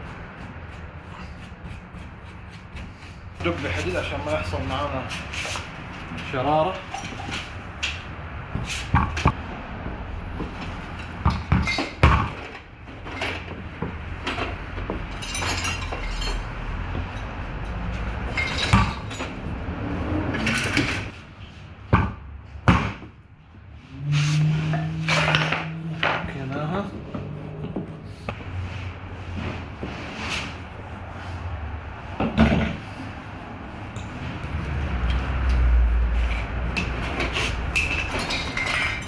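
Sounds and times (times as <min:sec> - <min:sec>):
metallic knocks and tool scraping: 0:05.1 - 0:08.0, 0:24.1 - 0:28.4, 0:36.2 - 0:39.0.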